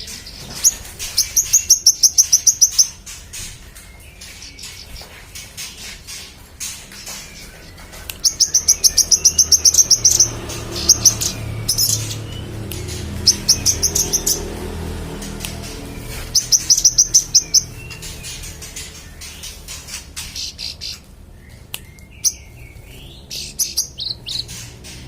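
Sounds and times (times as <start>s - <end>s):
bird singing sharp high notes: 0.2s - 4.9s, 8.2s - 24.6s.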